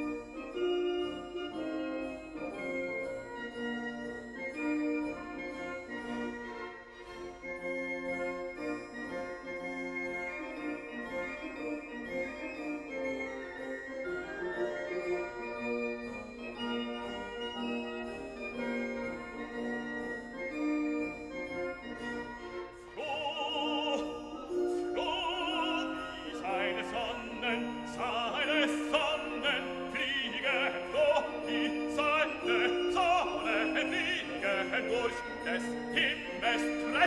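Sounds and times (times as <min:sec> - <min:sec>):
instrumental accompaniment: 0:00.0 - 0:37.0
operatic singing with vibrato: 0:21.9 - 0:37.0.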